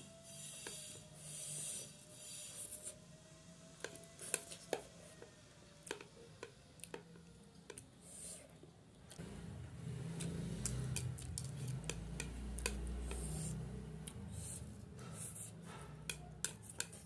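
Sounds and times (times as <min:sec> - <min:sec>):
chewing: 0:10.0 - 0:14.2.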